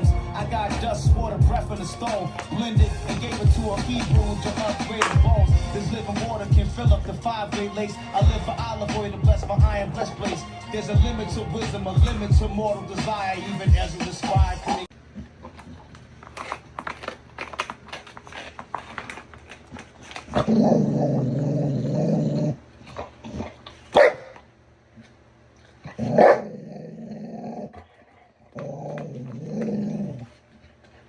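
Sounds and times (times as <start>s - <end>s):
clicking and scraping: 15.2s - 20.4s
puppy growling: 20.0s - 24.4s, 25.8s - 30.6s
puppy barking: 23.9s - 24.4s, 26.0s - 26.6s.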